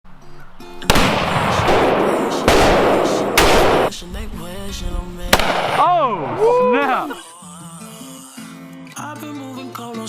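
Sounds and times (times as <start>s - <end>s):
loud gunshots with echo: 0.8s - 4.1s, 5.3s - 6.4s.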